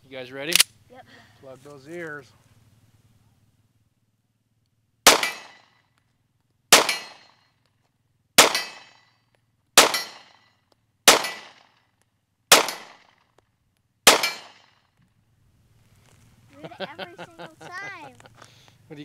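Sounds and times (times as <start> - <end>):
pistol shots: 5.0 - 5.7, 6.7 - 7.4, 8.4 - 9.0, 9.8 - 10.4, 11.1 - 11.8, 12.5 - 13.2, 14.0 - 14.8
bullet hitting distant steel plate: 5.1 - 5.9, 6.7 - 7.6, 8.4 - 9.2, 9.8 - 11.8, 12.5 - 13.2, 14.1 - 14.9.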